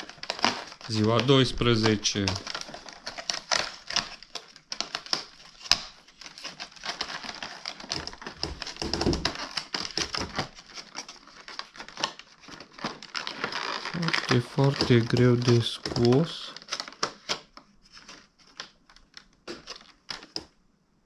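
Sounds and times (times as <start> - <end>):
cardboard and plastic packaging crinkling: 0.0 - 20.6.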